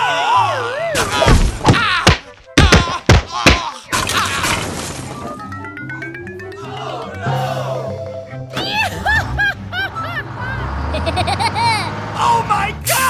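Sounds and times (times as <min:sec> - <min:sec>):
background music: 0:00.0 - 0:13.0
cartoon thuds and whacks: 0:01.0 - 0:04.9
rising ticking tone: 0:05.3 - 0:08.6.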